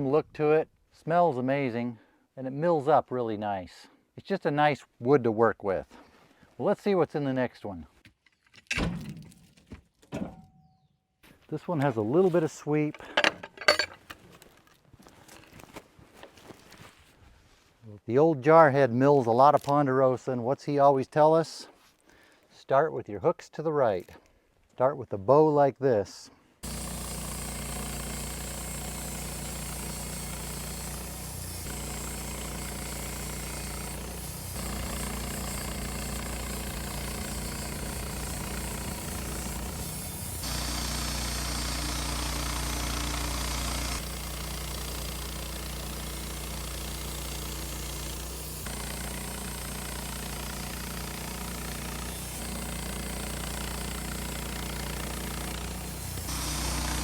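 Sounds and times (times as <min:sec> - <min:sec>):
band sawmill cutting log: 0:26.6 - 0:57.0.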